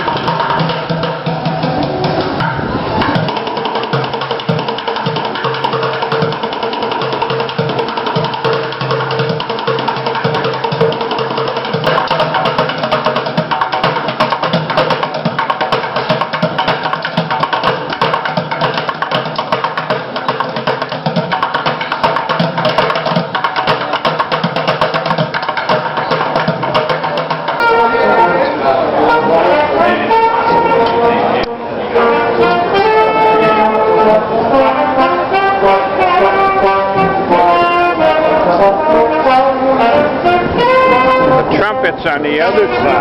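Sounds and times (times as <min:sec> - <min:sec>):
music with busy percussion: 0:00.0 - 0:43.0.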